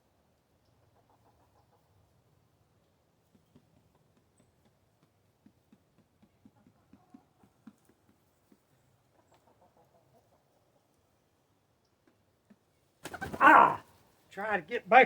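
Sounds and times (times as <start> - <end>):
chickens clucking faintly: 6.2 - 13.8.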